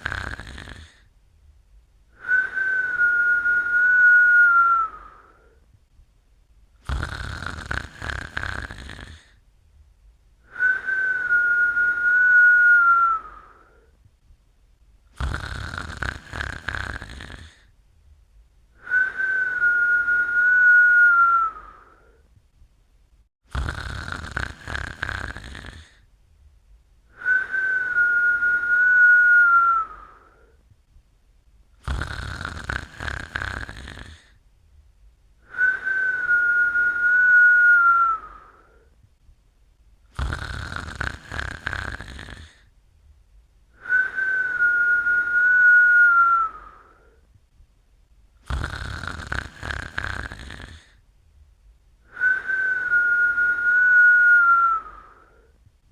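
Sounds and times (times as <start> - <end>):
rattling snore: 0.0 - 1.1, 6.8 - 9.4, 15.2 - 17.7, 23.5 - 26.0, 31.8 - 34.4, 40.1 - 42.7, 48.4 - 51.0
whistled breath: 2.2 - 5.6, 10.5 - 13.9, 18.8 - 22.2, 27.1 - 30.6, 35.4 - 38.9, 43.7 - 47.2, 52.0 - 55.6.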